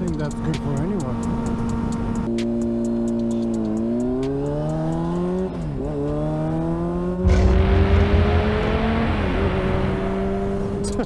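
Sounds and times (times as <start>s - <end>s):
motorcycle engine accelerating: 1.1s - 11.0s
loud low rushing noise: 7.2s - 10.8s.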